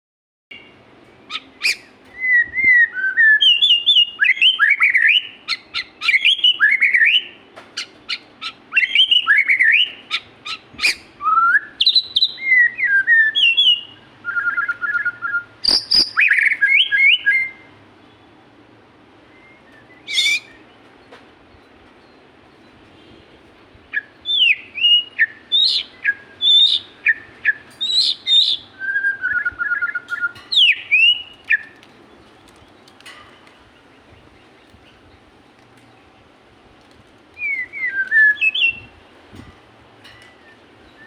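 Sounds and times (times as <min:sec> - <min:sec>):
songbird singing whistled phrases: 0:00.5 - 0:17.7, 0:19.3 - 0:20.8, 0:23.9 - 0:31.9, 0:37.4 - 0:39.0, 0:40.3 - 0:41.0.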